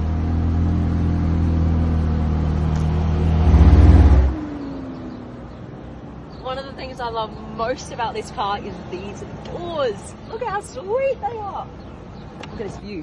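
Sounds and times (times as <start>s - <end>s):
car engine revving: 0.0s - 5.6s.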